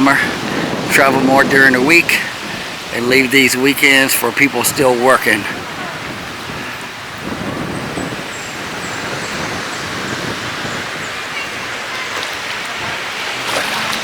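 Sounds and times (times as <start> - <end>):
ocean surf: 0.0 - 14.0
wind: 0.0 - 14.0.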